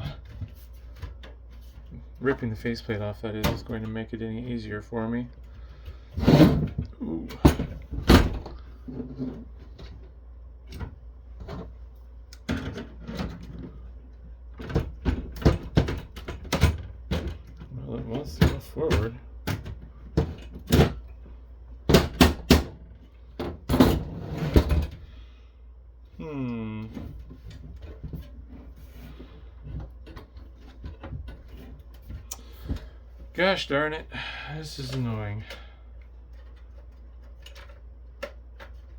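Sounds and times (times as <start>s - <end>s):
clicks and scrapes of metal parts: 36.2s - 38.9s.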